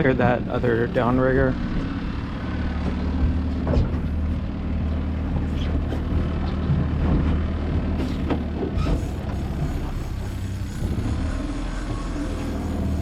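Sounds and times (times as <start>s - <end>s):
boat engine humming: 0.0s - 13.0s.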